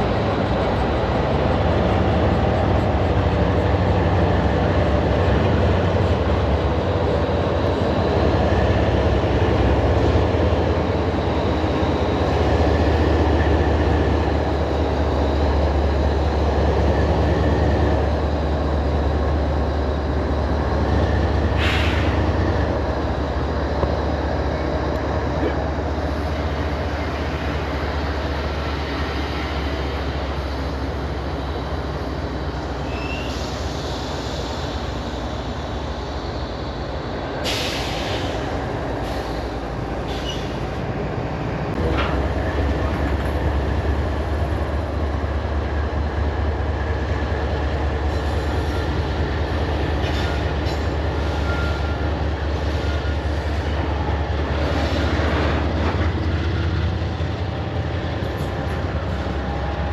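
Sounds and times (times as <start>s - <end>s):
diesel locomotive drone: 0.0s - 59.9s.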